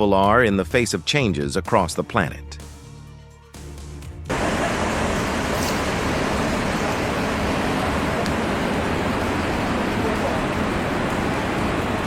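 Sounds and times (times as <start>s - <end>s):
floodwater rushing: 4.3s - 12.0s.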